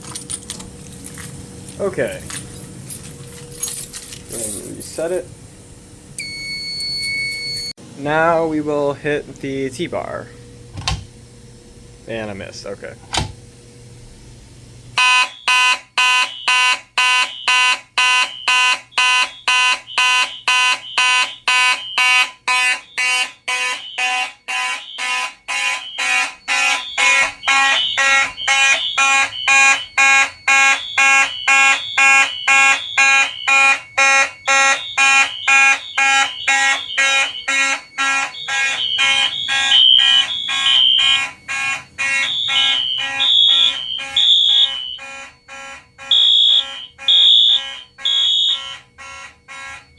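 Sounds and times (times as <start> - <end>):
fire alarm horns pulsing: 0.0 - 5.3, 6.2 - 7.9, 15.0 - 49.9
fire alarm pull station click: 6.2 - 7.7, 16.0 - 49.9.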